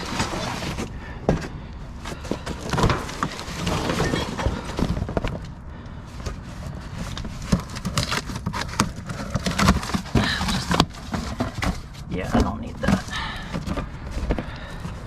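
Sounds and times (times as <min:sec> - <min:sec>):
scrap metal clanking and rattling: 0:00.0 - 0:05.5.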